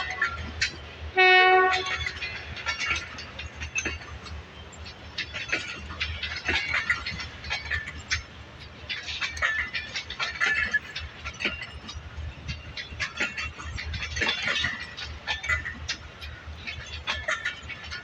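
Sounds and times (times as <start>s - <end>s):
train rumbling: 0.0s - 18.0s.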